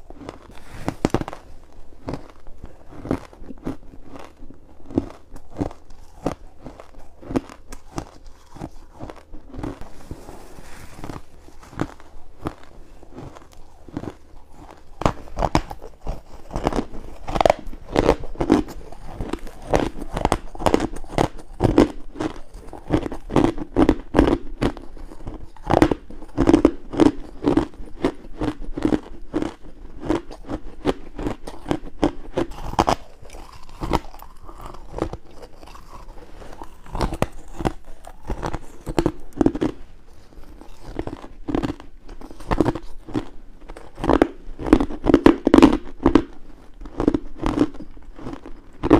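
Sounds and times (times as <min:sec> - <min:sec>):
person chewing crunchy ice: 0:00.0 - 0:48.9.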